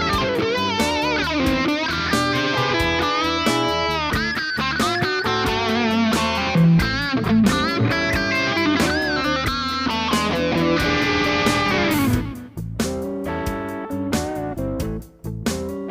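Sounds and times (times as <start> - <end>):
distorted electric guitar: 0.0 - 15.9
steady beat: 0.0 - 15.9.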